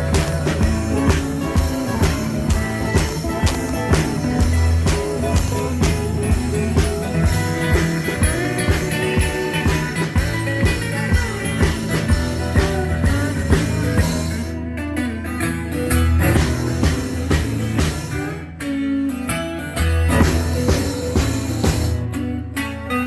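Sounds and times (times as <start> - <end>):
drum kit beat: 0.0 - 14.5, 16.4 - 18.4, 20.2 - 22.0
rock band playing: 0.0 - 14.5, 16.3 - 18.4, 20.2 - 22.1.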